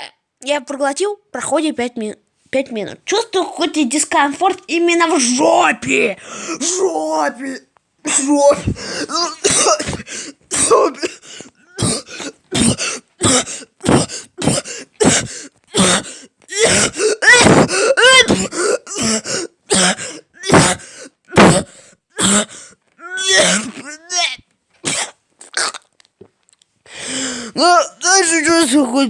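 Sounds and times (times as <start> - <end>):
man coughing harshly: 6.2 - 7.2, 8.1 - 25.8.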